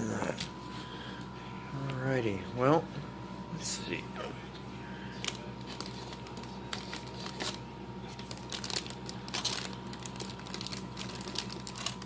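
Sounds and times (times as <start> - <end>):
steady hum: 0.0 - 12.0
plastic and cardboard crinkling: 5.2 - 12.0.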